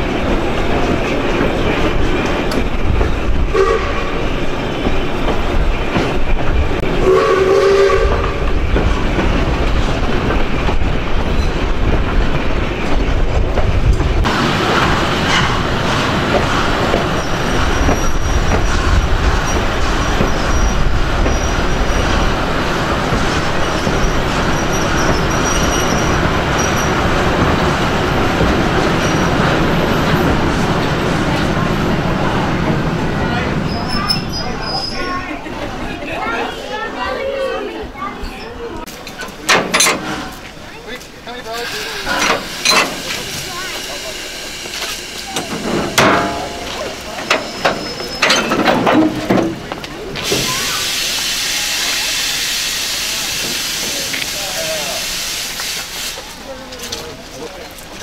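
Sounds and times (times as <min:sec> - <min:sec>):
train wheels clacking on rails: 0:00.0 - 0:35.2, 0:38.9 - 0:58.0
steam whistle blasts: 0:07.0 - 0:08.4.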